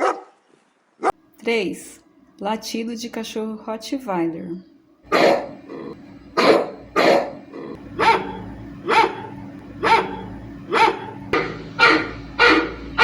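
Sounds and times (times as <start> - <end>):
dog barking: 0.0 - 0.4, 5.1 - 5.6, 6.4 - 7.4, 8.0 - 11.2, 11.8 - 13.0.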